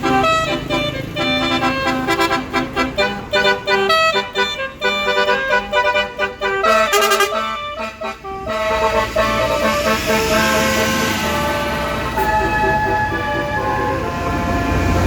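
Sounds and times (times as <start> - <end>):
bus rumbling: 0.0 - 15.0
multi-tone horn tune: 0.0 - 15.0.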